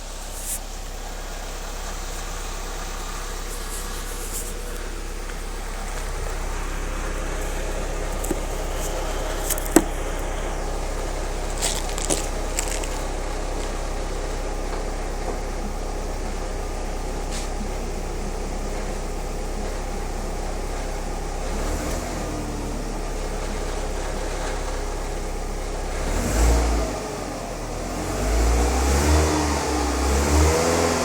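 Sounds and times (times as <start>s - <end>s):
car engine droning: 0.0s - 31.0s.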